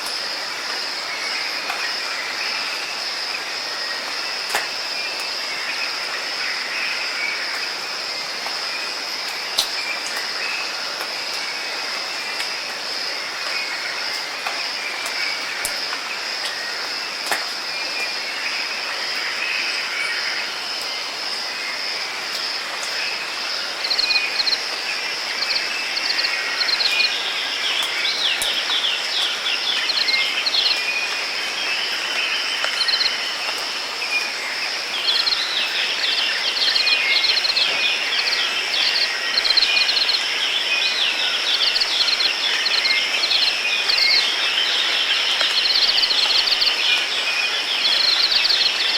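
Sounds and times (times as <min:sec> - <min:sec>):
high-pitched insect drone: 0:18.4 - 0:48.9.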